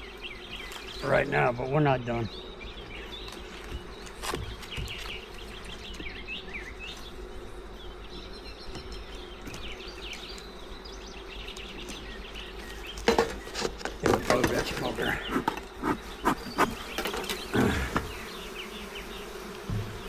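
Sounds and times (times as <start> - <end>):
honeybees buzzing: 0.0 - 20.0
small birds chirping: 0.0 - 20.0.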